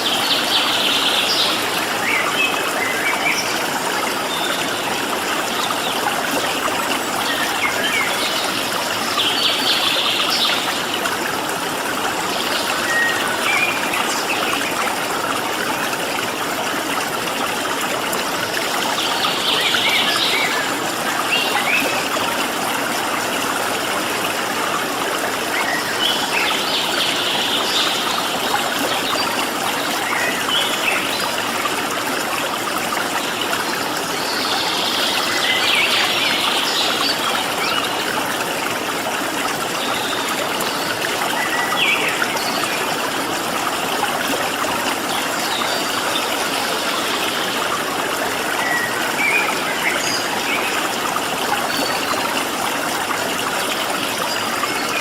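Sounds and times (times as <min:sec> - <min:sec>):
stream water flowing: 0:00.0 - 0:55.0.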